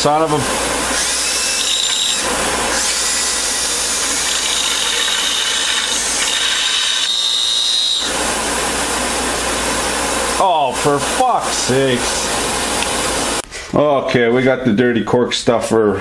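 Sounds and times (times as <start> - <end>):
power tool whining: 0.0 - 8.2.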